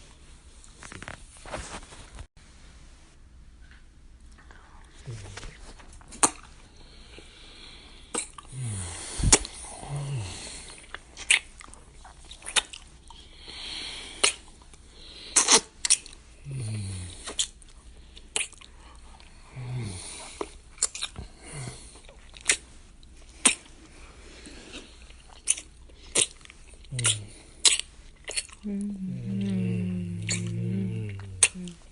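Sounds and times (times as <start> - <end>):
wet lip smacks: 6.1 - 6.5, 8.1 - 8.5, 10.7 - 13.2, 14.2 - 14.7, 15.4 - 16.2, 17.2 - 18.8, 20.4 - 21.2, 22.1 - 22.6, 23.4 - 23.7, 25.3 - 28.6, 30.2 - 30.5, 31.2 - 31.8
breathy exhales: 6.8 - 10.8, 28.6 - 31.9
short low hums: 28.7 - 31.9.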